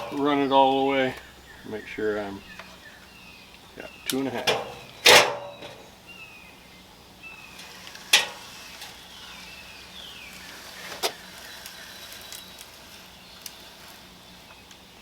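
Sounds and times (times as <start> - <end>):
faint scraping and squeaks: 7.3 - 14.7.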